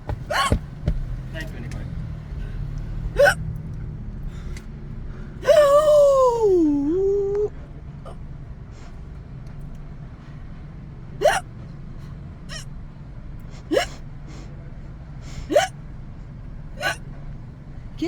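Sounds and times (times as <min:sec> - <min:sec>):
woman hiccuping: 0:00.3 - 0:00.6, 0:03.2 - 0:03.5, 0:11.2 - 0:11.5, 0:13.7 - 0:14.0, 0:15.5 - 0:15.7, 0:16.8 - 0:17.0.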